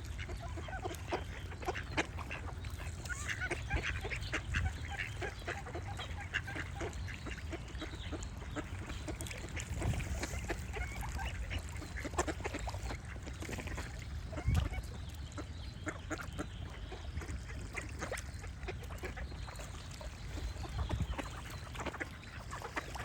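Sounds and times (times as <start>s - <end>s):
ducks quacking: 0.0s - 23.0s
birds singing: 13.8s - 23.0s.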